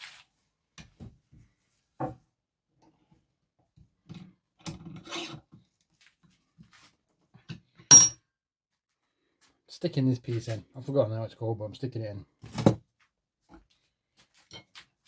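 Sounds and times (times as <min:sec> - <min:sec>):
sharp metallic clink: 0:07.9 - 0:08.2.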